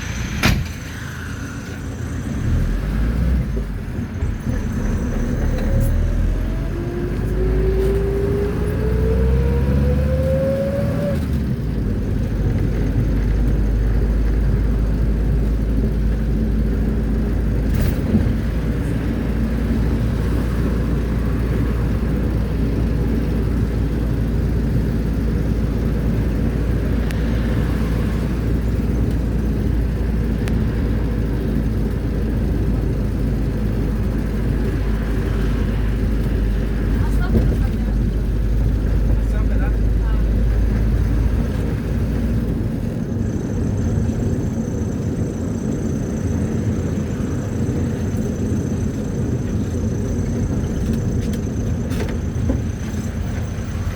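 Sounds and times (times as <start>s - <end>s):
rising whine: 0.0s - 12.2s
engine and road noise rumble: 0.0s - 53.9s.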